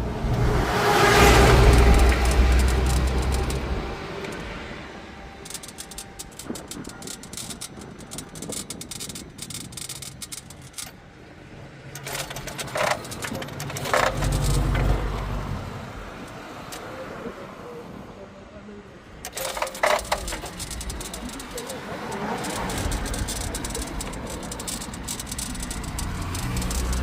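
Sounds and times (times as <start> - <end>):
engine cranking rumble: 0.0 - 11.0, 11.9 - 16.8, 19.2 - 27.0
fast irregular clicking: 1.2 - 4.5, 5.4 - 11.0, 12.0 - 15.2, 19.3 - 27.0.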